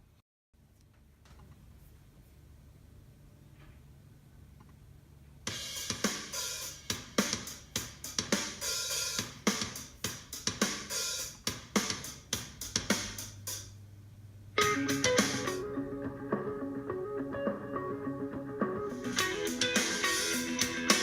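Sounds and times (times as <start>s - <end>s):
drum kit music through laptop speakers: 5.5s - 13.7s, 14.6s - 21.0s.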